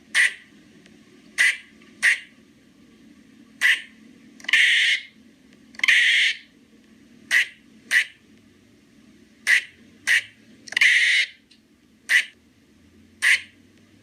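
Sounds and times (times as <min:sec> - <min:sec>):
person imitating squirrel calls: 0:01.4 - 0:02.3, 0:07.3 - 0:08.2, 0:09.5 - 0:11.4, 0:12.1 - 0:12.4, 0:13.2 - 0:13.5.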